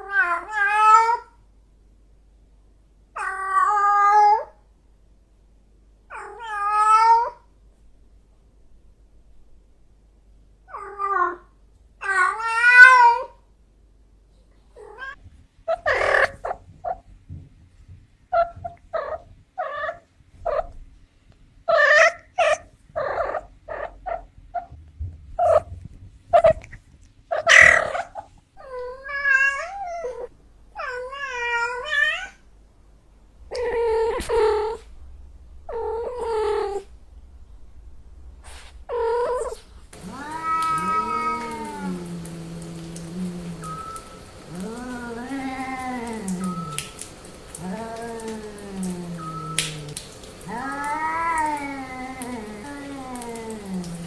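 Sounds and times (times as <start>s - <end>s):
cats meowing: 0.0s - 1.3s, 10.7s - 13.4s, 27.3s - 32.4s, 33.5s - 35.0s, 35.6s - 37.0s, 38.5s - 54.0s
cats yowling: 3.2s - 4.5s, 6.1s - 7.4s, 10.7s - 13.4s, 27.3s - 32.4s, 33.5s - 34.9s, 35.7s - 37.0s, 38.5s - 54.0s.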